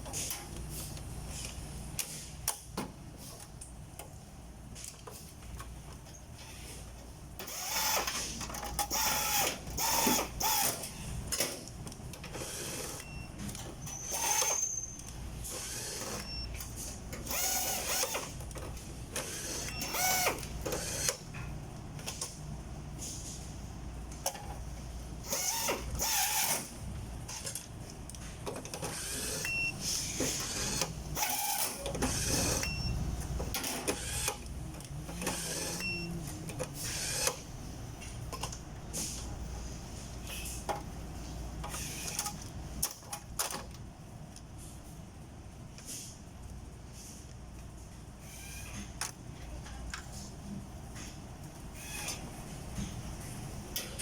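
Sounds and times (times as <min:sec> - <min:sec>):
low machinery hum: 0:31.8 - 0:41.7.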